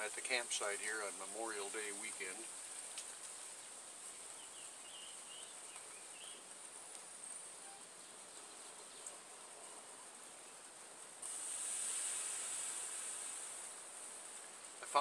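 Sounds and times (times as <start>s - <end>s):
steady high-pitched hiss: 0.0s - 15.0s
small bird chirping: 3.5s - 6.6s.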